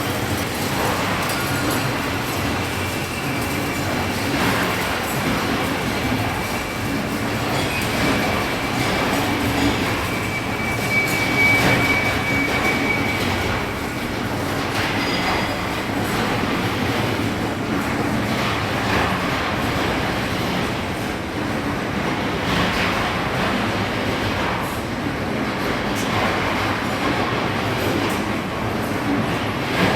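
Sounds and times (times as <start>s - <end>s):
rotating drum rumbling and rattling: 0.0s - 29.9s
thin high squeal: 9.7s - 13.8s.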